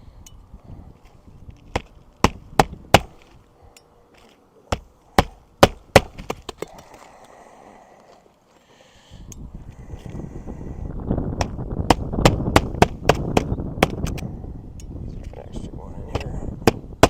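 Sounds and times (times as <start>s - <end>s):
hammer striking roof: 1.7s - 3.2s, 4.7s - 6.5s, 11.4s - 14.0s, 16.6s - 17.0s.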